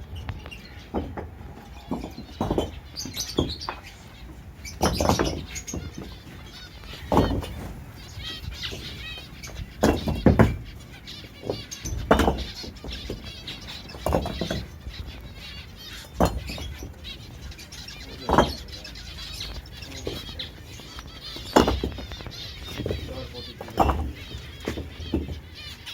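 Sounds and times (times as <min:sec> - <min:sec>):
cage birds chirping: 0:00.0 - 0:25.9.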